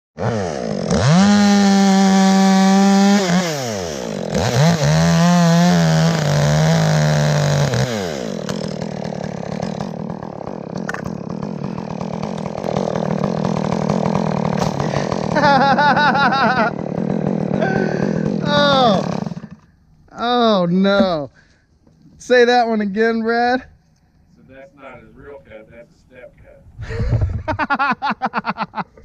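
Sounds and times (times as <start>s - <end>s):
chainsaw revving: 0.2s - 19.8s.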